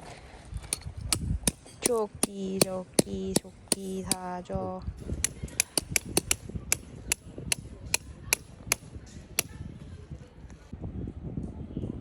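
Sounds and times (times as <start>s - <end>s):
hammer striking tent peg: 0.7s - 4.3s, 5.0s - 9.6s.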